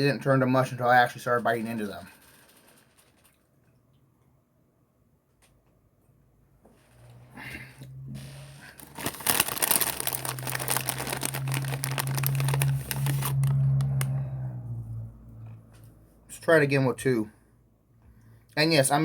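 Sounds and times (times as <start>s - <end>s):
snack bag crinkling: 8.7s - 14.1s.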